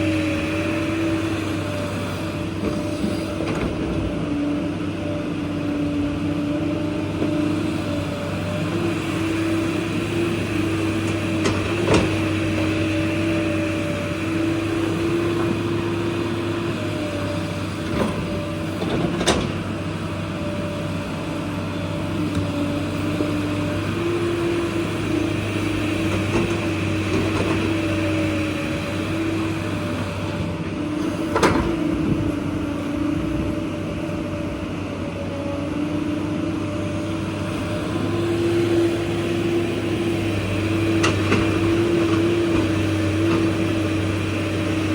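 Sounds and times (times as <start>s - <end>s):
excavator diesel engine whining: 0.0s - 44.9s.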